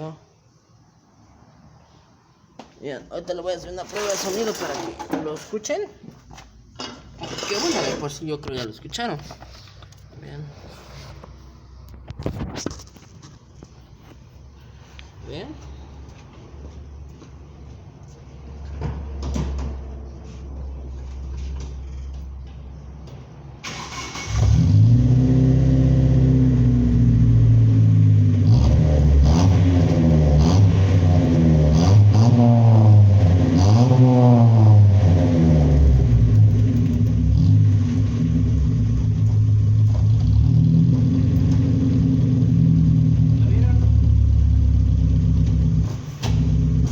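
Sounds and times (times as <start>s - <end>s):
car engine revving: 23.6s - 46.9s.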